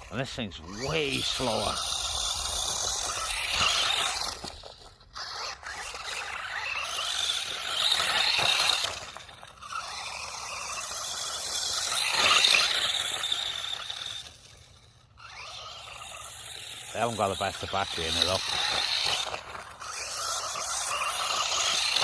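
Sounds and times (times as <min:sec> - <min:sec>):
electric motor whining: 0:00.0 - 0:22.0
tyres scraping loose ground: 0:00.0 - 0:22.0.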